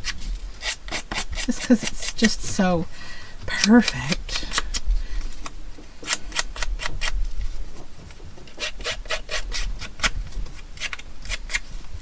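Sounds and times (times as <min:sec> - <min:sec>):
scissor blade rasping on paper: 0:00.0 - 0:02.4, 0:03.6 - 0:04.8, 0:06.0 - 0:07.2, 0:08.5 - 0:10.2, 0:10.8 - 0:11.7.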